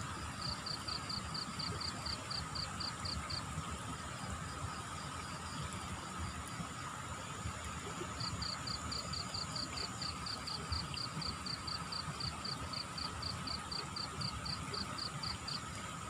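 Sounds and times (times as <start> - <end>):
insect chirping: 0.3 - 3.4, 8.2 - 15.6.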